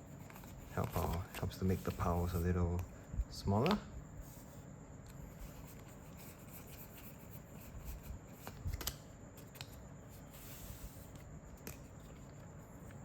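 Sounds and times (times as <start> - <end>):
cards rubbing and sliding: 0.1 - 2.7.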